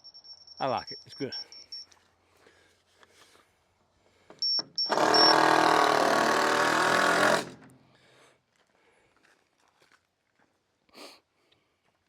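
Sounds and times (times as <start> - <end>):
short high electronic beeps: 0.0 - 1.9, 4.4 - 5.6
motor running: 4.8 - 7.8.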